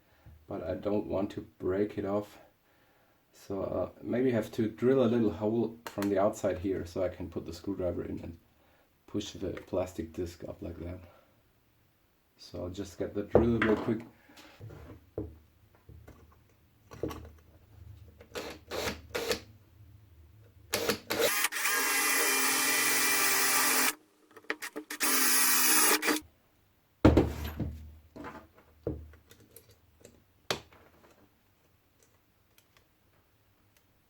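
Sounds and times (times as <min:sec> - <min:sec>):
electric drill running: 0:20.8 - 0:26.2.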